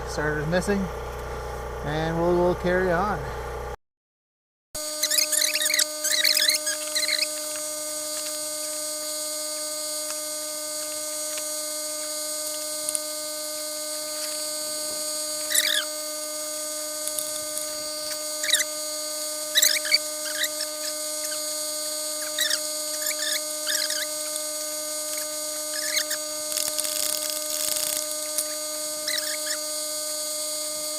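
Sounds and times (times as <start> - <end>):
high-pitched generator squeal: 4.8 - 30.9
squeaky chirps: 4.9 - 8.8, 14.0 - 16.1, 17.0 - 18.8, 19.4 - 29.8.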